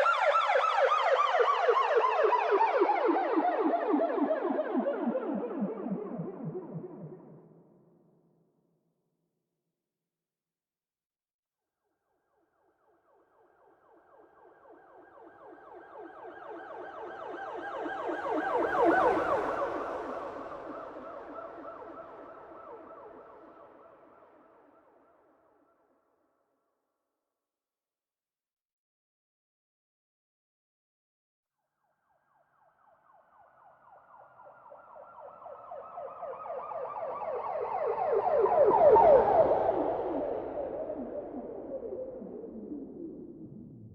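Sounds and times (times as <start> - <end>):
siren yelping: 16.6 - 24.1, 34.2 - 43.4.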